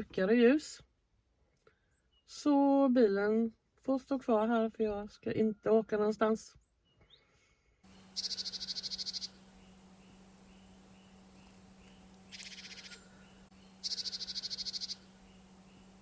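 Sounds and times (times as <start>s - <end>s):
faint bird chirps: 1.7s - 2.4s, 6.6s - 16.0s
small birds trilling: 6.7s - 16.0s.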